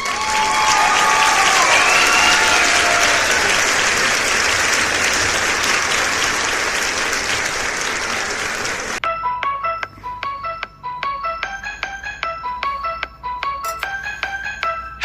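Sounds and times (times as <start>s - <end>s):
crowd applause: 0.0s - 9.0s.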